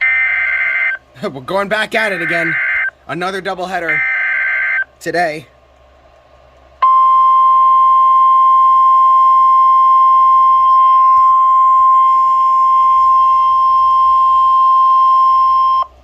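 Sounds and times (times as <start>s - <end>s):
steady warning alarm tone: 0.0s - 1.0s, 1.9s - 2.9s, 3.8s - 4.9s, 6.8s - 15.9s.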